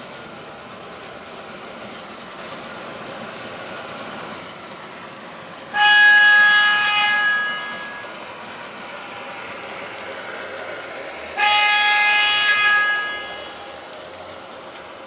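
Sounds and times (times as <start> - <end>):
model train running on track: 0.0 - 15.0
model train horn: 5.7 - 8.2, 11.4 - 13.8.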